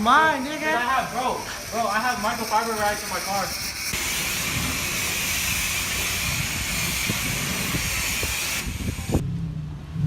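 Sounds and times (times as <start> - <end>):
high-pressure water spray hissing: 0.5 - 9.2.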